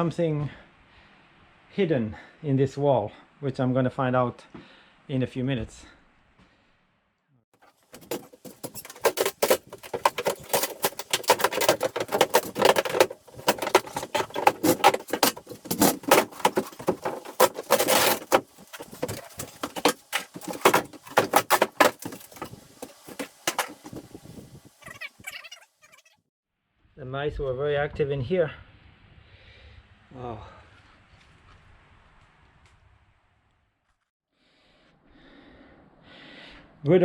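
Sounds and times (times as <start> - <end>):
wall boards cracking and rattling: 7.6 - 24.2.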